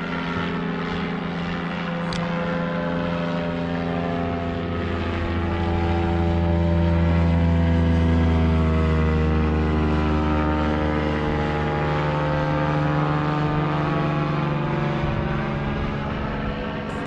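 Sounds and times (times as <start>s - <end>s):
outboard motor running: 0.0s - 17.0s.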